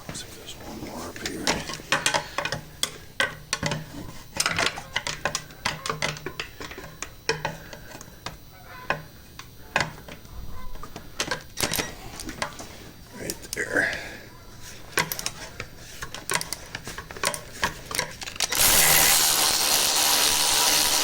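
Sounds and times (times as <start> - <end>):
ratchet wrench clicking: 18.2 - 21.0.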